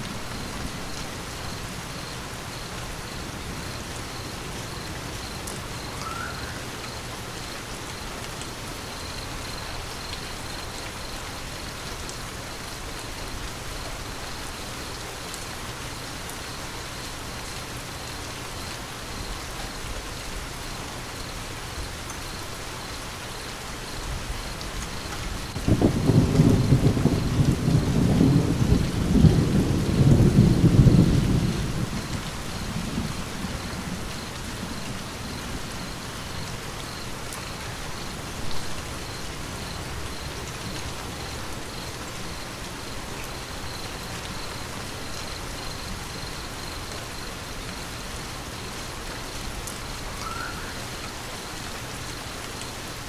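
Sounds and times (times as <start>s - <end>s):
steady rain: 0.0s - 53.0s
thunder rumbling: 25.4s - 37.1s.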